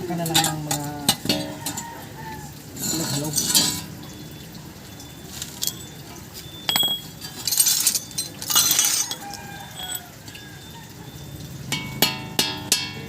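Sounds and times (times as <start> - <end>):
sharp metallic clink: 6.7 - 9.2.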